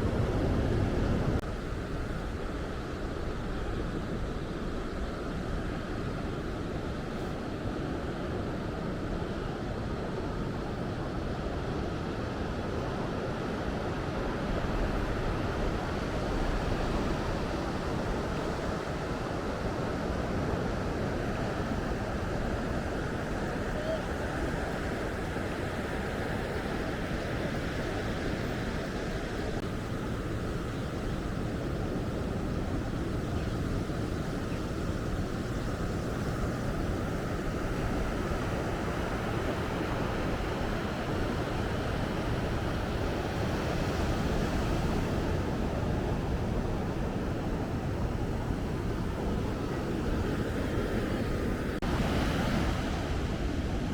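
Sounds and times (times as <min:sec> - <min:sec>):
wind noise on microphone: 0:00.0 - 0:53.9
ocean surf breaking: 0:13.1 - 0:53.9.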